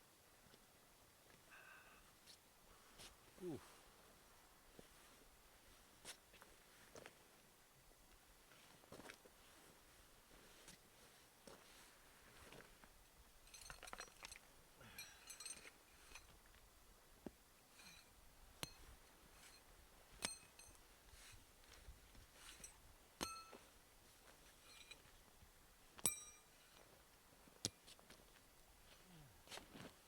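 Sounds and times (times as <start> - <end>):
soft rustling: 18.7 - 22.8.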